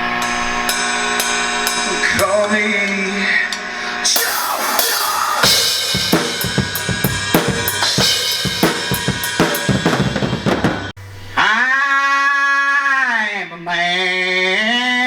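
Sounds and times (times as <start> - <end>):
cymbals: 3.3 - 11.4
snare drum: 4.9 - 10.9.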